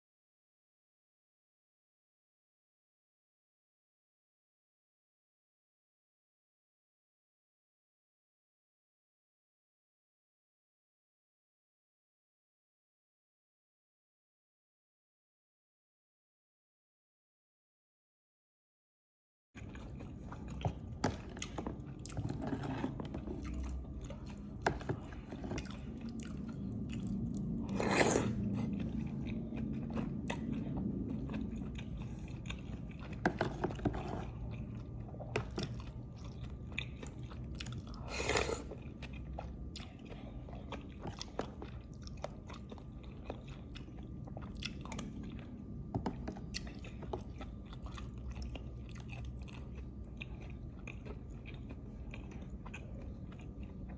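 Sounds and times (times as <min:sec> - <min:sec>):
person chewing food: 0:19.6 - 0:53.9.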